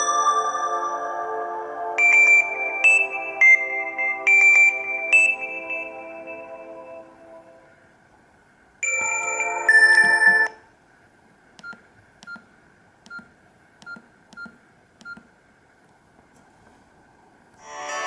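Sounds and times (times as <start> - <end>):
short beeps with clicks: 8.8 - 10.6.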